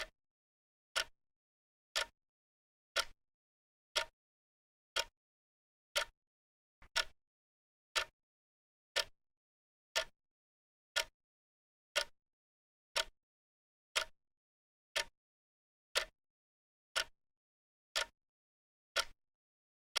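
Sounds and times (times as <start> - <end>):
clock ticking: 2.0 - 2.2, 3.0 - 3.2, 6.8 - 7.2, 18.0 - 18.2, 19.0 - 19.2.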